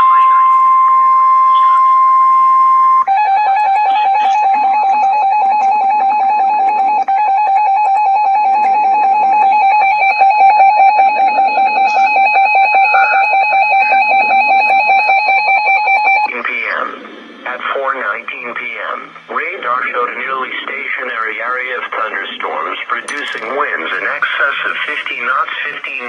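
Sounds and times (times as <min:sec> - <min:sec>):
steady high beep: 0:00.0 - 0:16.3
rapidly warbling alert tone: 0:11.8 - 0:14.7.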